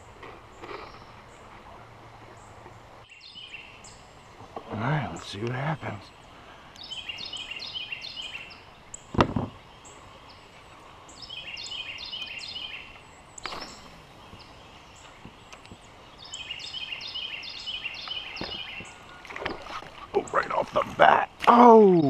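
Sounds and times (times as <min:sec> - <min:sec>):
creekside ambience: 0:00.0 - 0:22.0
bird singing falling notes: 0:06.8 - 0:20.9.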